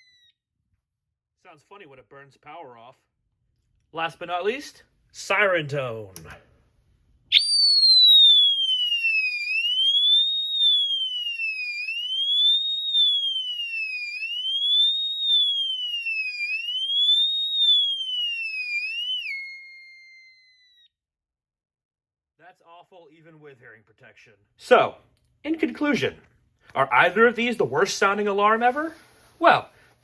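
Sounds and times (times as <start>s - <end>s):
fire alarm siren sweeping tone: 0.0s - 0.4s, 7.3s - 21.0s.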